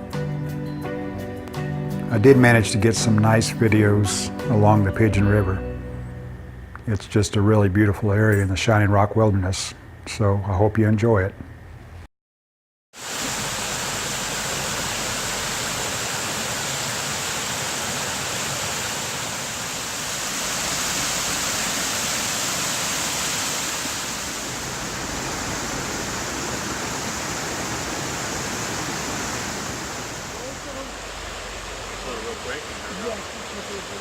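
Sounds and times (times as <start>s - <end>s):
rushing river water: 13.0s - 34.0s.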